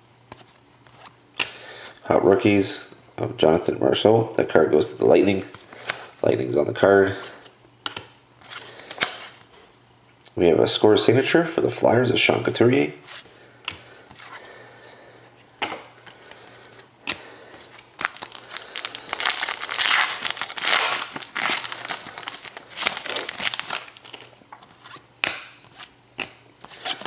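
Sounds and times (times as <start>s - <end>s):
wrapper being torn and crinkled: 17.9s - 24.4s.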